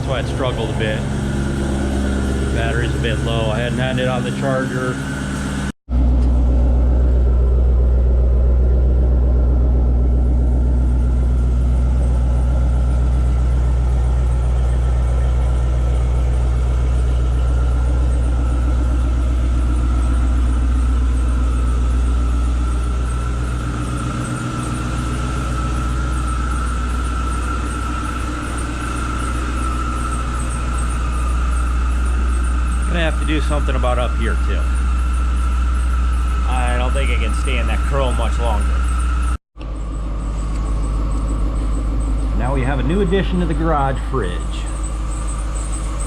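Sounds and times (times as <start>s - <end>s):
car engine idling: 0.0s - 46.0s.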